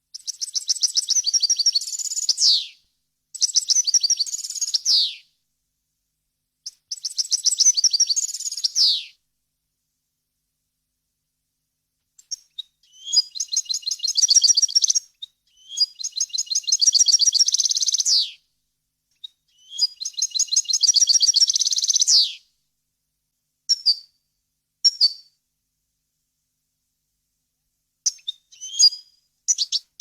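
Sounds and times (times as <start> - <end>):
bird trilling song: 0.2 - 2.8, 3.4 - 5.2, 6.7 - 9.1, 12.2 - 18.4, 19.2 - 22.4, 24.8 - 25.3, 28.0 - 30.0.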